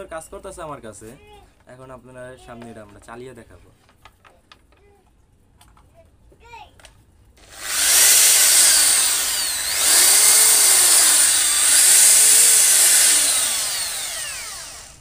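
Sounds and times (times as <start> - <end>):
electric drill motor whine: 7.4 - 15.0.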